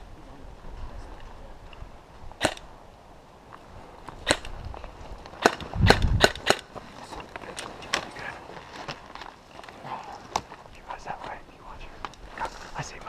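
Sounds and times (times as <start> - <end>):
airsoft gun shots: 2.4 - 2.7, 4.2 - 4.5, 5.4 - 6.6.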